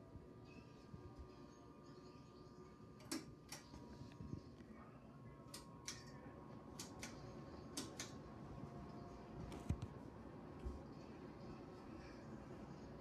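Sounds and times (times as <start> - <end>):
ceiling fan hum: 0.0 - 13.0
sharp clicks: 6.8 - 8.2.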